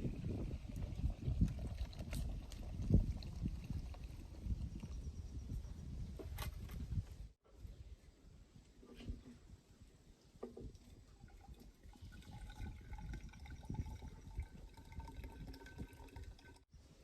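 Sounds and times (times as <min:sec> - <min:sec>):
liquid pouring into container: 0:00.0 - 0:04.9, 0:10.6 - 0:16.7.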